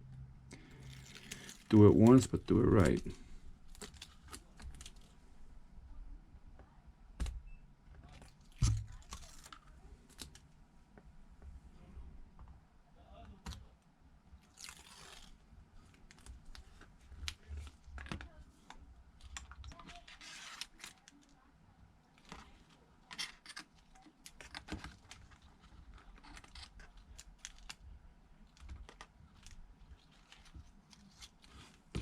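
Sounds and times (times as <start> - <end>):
tape being peeled off: 14.4 - 15.4, 19.7 - 21.2.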